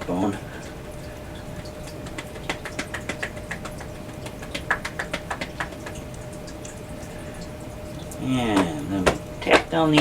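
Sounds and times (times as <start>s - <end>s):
fists tapping on body: 1.9s - 6.2s.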